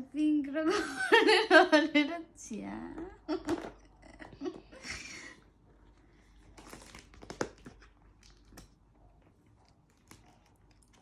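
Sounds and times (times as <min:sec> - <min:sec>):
paper and plastic crinkling: 0:06.0 - 0:08.7.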